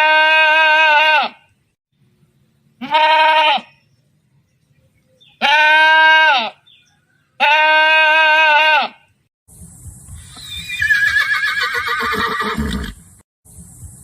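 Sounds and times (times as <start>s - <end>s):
farm animal bleating: 0.0s - 1.5s, 2.8s - 3.8s, 5.3s - 6.7s, 7.4s - 9.1s.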